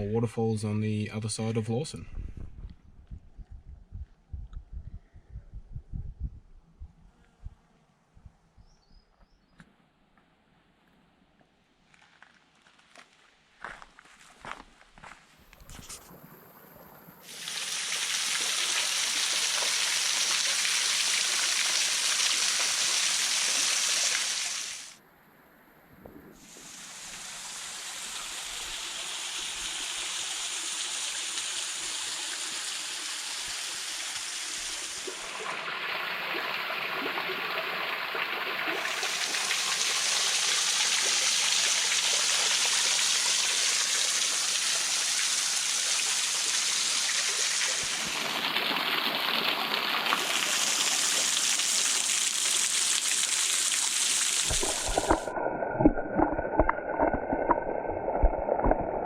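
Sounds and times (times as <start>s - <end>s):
muffled low rumble: 2.0s - 8.6s.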